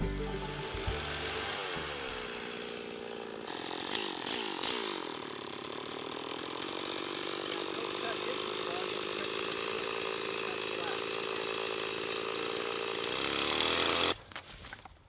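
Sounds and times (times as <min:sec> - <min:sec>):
chainsaw engine revving: 0:00.0 - 0:14.2.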